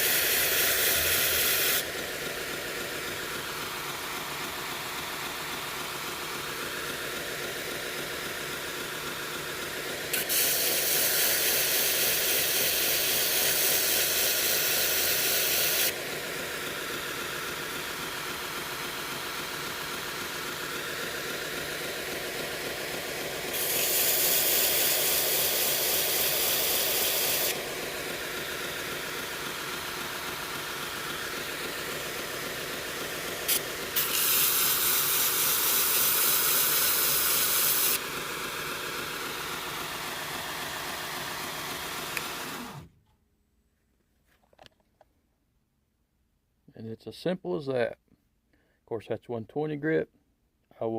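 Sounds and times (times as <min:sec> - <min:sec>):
blade grinding on belt: 0:00.0 - 0:01.9, 0:10.1 - 0:15.9, 0:23.5 - 0:27.7, 0:33.5 - 0:38.0
belt grinder running: 0:00.0 - 0:42.9.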